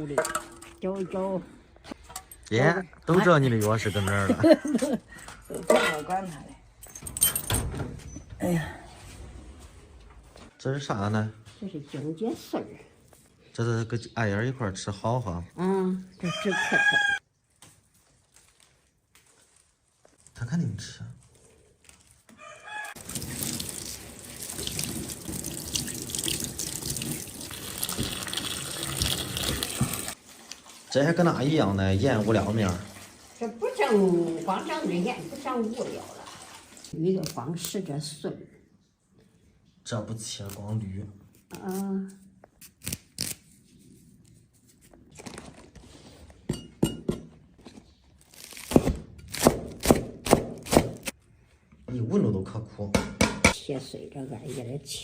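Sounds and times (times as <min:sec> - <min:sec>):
leafy greens rustling: 0:17.4 - 0:22.4
tap water running into sink: 0:23.0 - 0:30.9.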